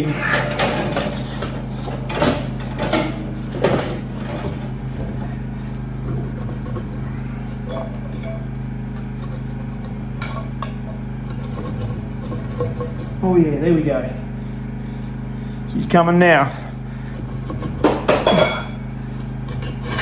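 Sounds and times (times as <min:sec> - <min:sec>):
metal engine parts clinking: 0:00.1 - 0:13.2.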